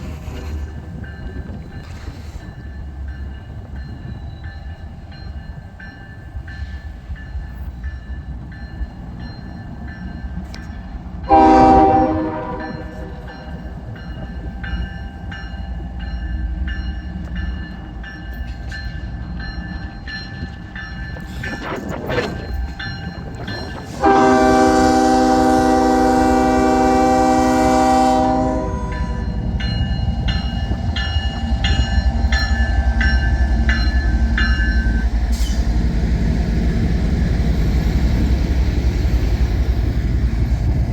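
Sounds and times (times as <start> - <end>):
train rumbling: 0.0 - 40.9
locomotive horn blast: 11.3 - 13.5, 23.9 - 29.3.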